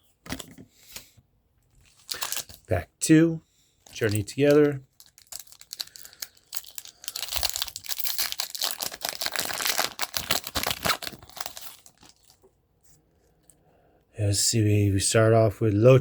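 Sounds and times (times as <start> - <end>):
foil wrapper crinkling: 1.8 - 2.7, 3.8 - 12.5
wrapper tearing crackles: 1.8 - 2.7, 3.8 - 12.4.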